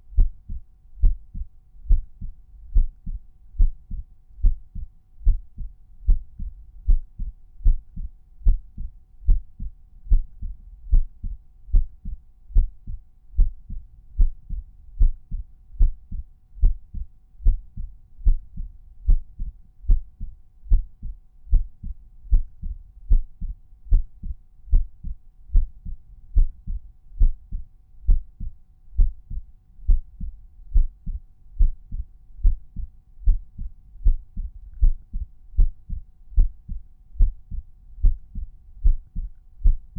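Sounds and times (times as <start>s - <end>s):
heartbeat thuds: 0.1s - 39.9s.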